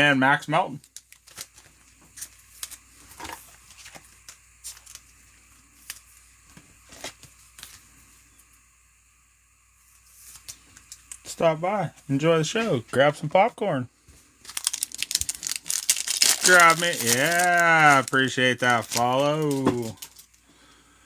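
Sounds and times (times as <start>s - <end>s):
cards clicking and rustling: 0.8s - 5.0s, 14.4s - 20.4s.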